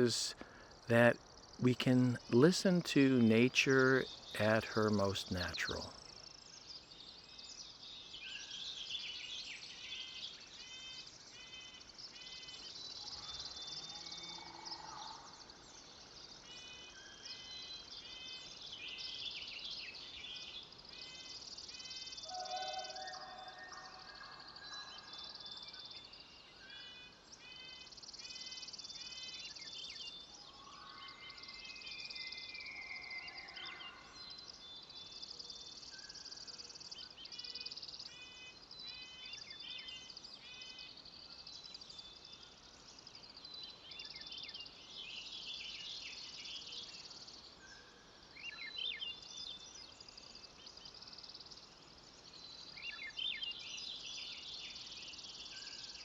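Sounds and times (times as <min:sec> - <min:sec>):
birds chirping: 0:00.0 - 0:06.0.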